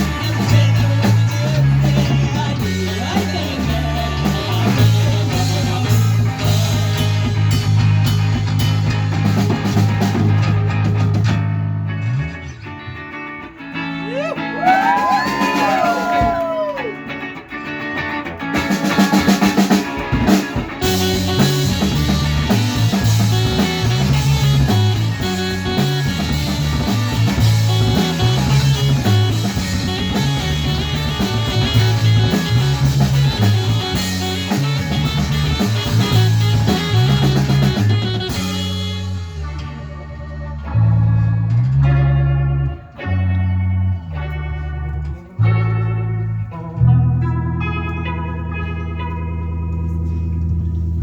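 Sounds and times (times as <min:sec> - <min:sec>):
drum kit: 0:00.0 - 0:12.4, 0:14.0 - 0:42.4
bass guitar: 0:00.0 - 0:51.0
electric guitar: 0:00.0 - 0:51.0.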